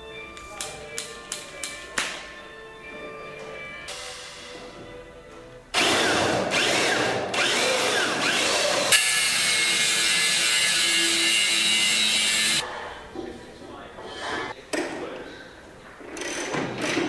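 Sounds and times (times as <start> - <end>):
quiet background music: 0.0 - 17.0
power tool grinding: 5.8 - 12.6.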